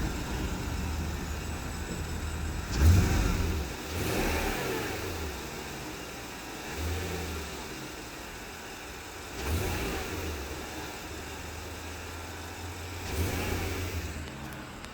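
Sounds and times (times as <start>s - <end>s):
car engine running: 0.0s - 14.9s.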